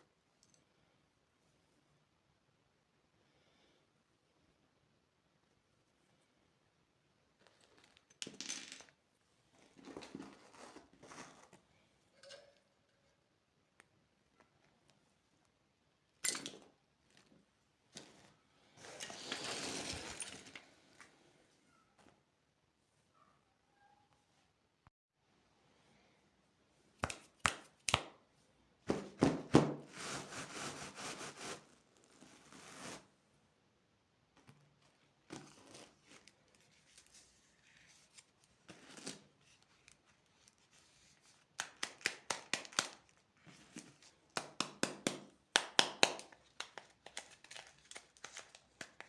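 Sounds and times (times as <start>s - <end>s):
candy wrapper crinkling: 46.2s - 49.0s.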